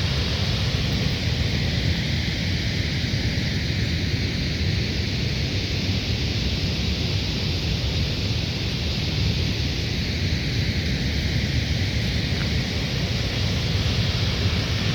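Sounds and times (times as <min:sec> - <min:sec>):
waterfall crashing with deep rumble: 0:11.8 - 0:14.9.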